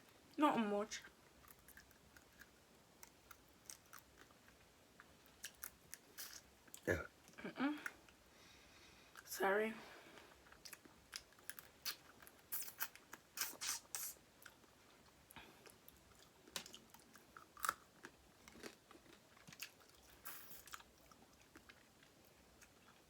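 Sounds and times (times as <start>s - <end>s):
person chewing: 1.4s - 6.8s, 10.2s - 23.0s.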